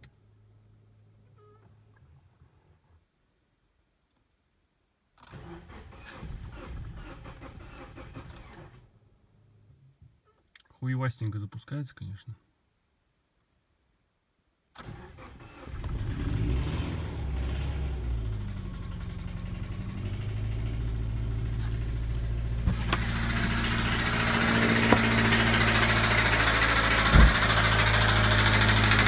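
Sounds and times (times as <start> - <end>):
car engine running and knocking: 17.4 - 29.0.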